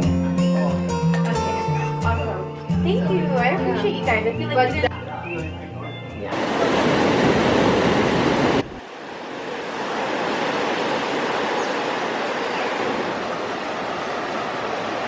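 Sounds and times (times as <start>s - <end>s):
ocean surf rushing: 6.3s - 15.0s.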